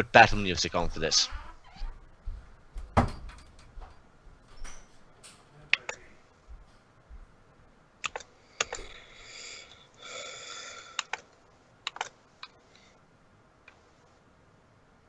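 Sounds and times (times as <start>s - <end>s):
keyboard and mouse clicks: 8.0s - 8.9s, 11.0s - 11.3s, 11.9s - 12.6s.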